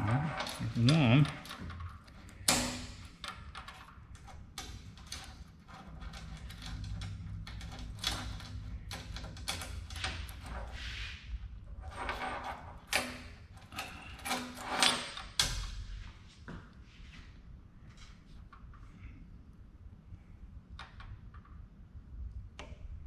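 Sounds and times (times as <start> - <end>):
metal parts clicking and scraping: 0.0 - 10.8.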